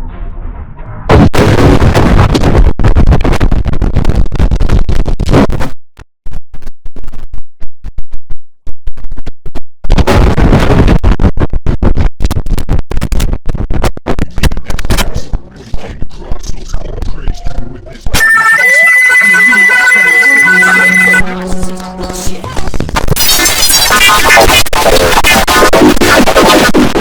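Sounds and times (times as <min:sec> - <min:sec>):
distorted stuttering computer sound: 0:18.2 - 0:27.0.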